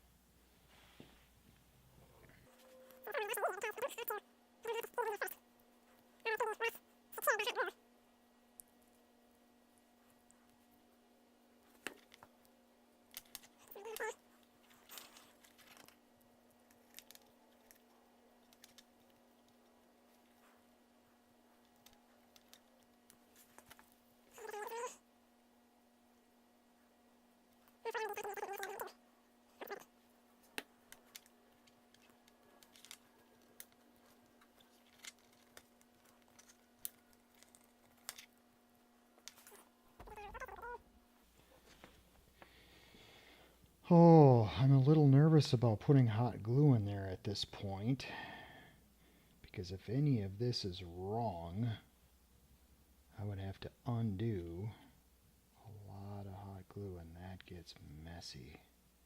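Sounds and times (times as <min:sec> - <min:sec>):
faint steady hum: 0:00.0 - 0:59.0
wavering squeak: 0:02.4 - 0:05.0
light clicks of small parts: 0:30.5 - 0:38.3.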